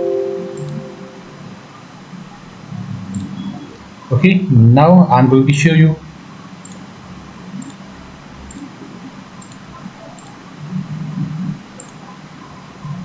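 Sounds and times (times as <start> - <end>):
low room hiss: 0.0 - 13.0
computer mouse clicks: 7.6 - 7.8, 9.4 - 9.6, 11.8 - 12.0.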